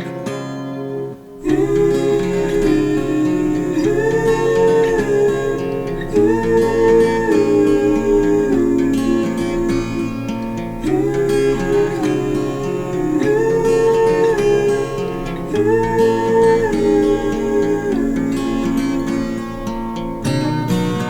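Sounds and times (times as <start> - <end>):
strummed acoustic guitar: 0.0 - 21.0.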